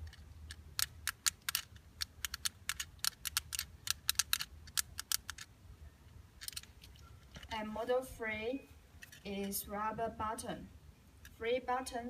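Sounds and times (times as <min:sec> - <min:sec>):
fidget toy buttons clicking: 0:00.0 - 0:05.5.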